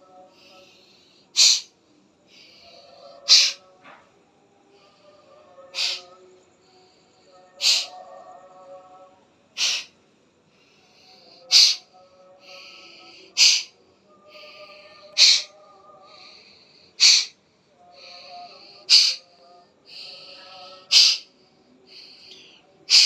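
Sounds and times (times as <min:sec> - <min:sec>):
faint background music: 0:00.0 - 0:23.0
rushing breath drawn in: 0:04.6 - 0:08.0, 0:09.6 - 0:23.0.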